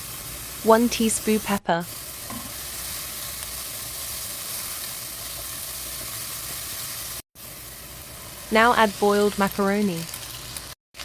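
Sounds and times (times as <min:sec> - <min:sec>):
vegetables sizzling in hot oil: 0:00.0 - 0:11.0.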